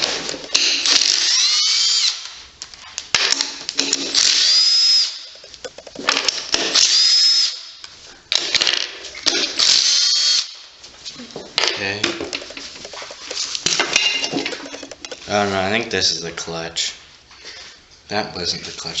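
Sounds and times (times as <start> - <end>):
power drill whining: 1.0 - 2.2.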